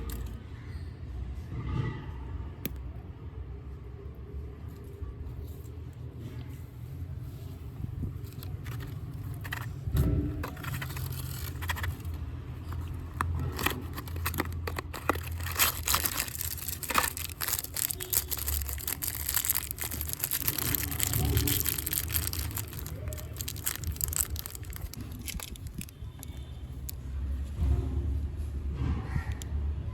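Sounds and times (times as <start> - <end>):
candy wrappers crinkling and tearing: 8.1 - 27.0.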